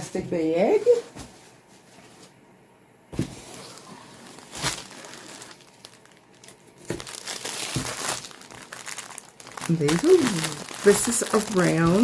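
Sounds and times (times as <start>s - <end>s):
plastic bag crinkling: 3.4s - 12.0s.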